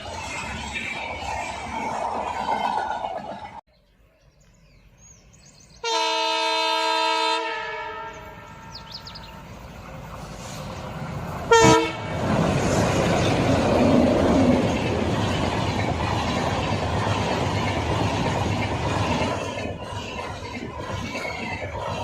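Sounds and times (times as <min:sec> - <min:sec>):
train rumbling: 0:00.0 - 0:03.7, 0:06.0 - 0:22.0
train horn blasts: 0:05.8 - 0:09.0, 0:11.5 - 0:12.2.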